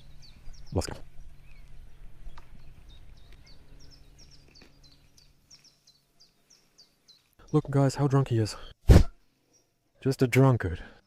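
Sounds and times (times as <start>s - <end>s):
small bird chirping: 0.0s - 8.8s.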